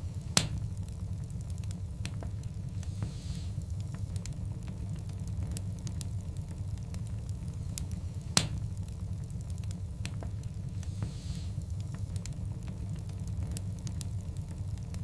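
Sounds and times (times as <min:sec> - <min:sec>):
fire popping: 0:00.0 - 0:15.0
soft hiss: 0:00.0 - 0:15.0
wood fire crackling: 0:00.0 - 0:15.0.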